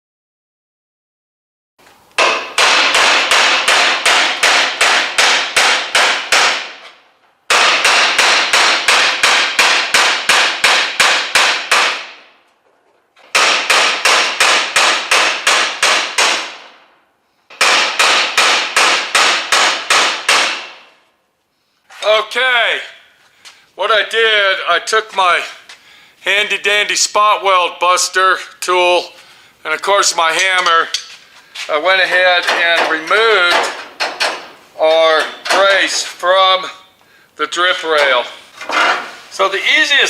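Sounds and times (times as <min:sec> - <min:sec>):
hammer striking chisel on sheet steel: 0:02.2 - 0:12.3, 0:13.3 - 0:16.8, 0:17.5 - 0:20.9, 0:30.4 - 0:31.2, 0:32.1 - 0:36.0.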